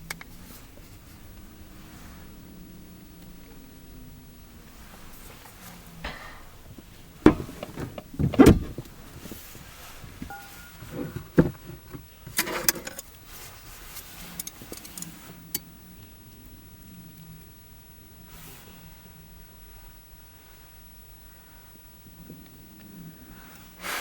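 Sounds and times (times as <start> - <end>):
knocks and clatters: 4.9 - 13.0.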